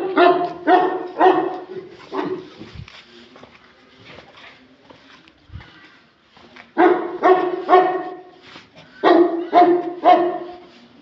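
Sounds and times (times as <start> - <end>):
dog barking: 0.0 - 2.5, 6.8 - 8.3, 9.0 - 10.7.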